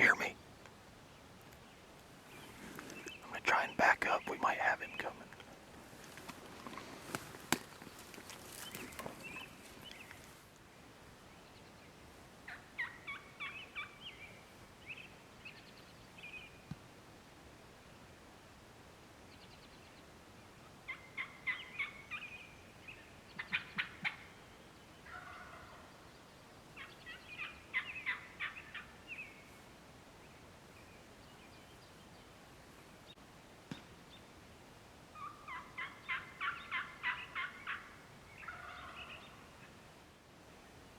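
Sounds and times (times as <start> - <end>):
rustling: 2.2 - 3.2, 5.7 - 10.5
turkey gobbling: 25.1 - 25.8, 35.2 - 39.2.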